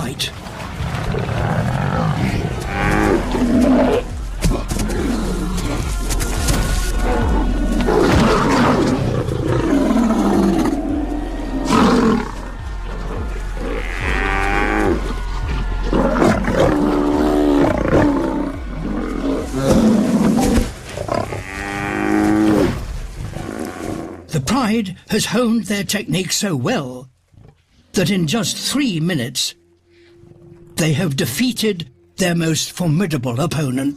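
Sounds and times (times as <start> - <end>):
lions growling and snarling: 0.7 - 24.3
buffalo bellowing: 1.4 - 6.4, 7.0 - 22.8.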